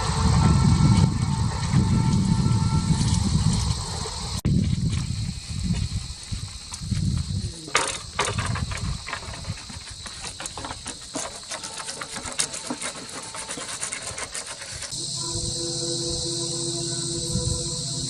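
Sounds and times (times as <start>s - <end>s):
insect chirring: 0.0s - 18.0s
steady low hum: 14.8s - 18.0s
low rumble: 15.0s - 18.0s.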